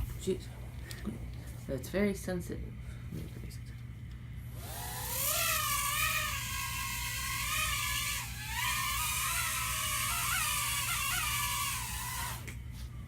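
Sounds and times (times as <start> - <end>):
drone propellers whining: 4.6 - 12.5.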